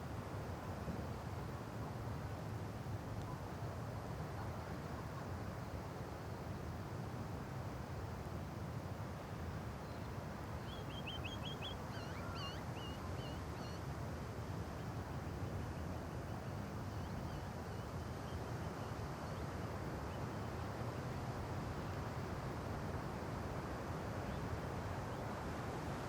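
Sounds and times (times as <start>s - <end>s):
light wind: 0.0s - 26.0s
bird chirping: 10.6s - 13.8s.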